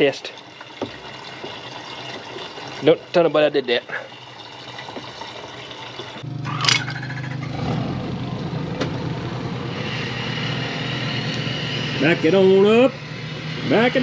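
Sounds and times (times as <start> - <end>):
engine starting and idling: 6.3 - 10.5.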